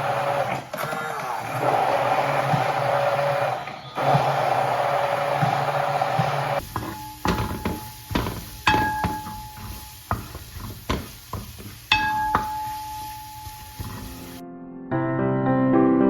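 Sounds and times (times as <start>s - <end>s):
steady motor noise: 0.0s - 6.6s
kitchenware knocking and clinking: 2.0s - 14.2s.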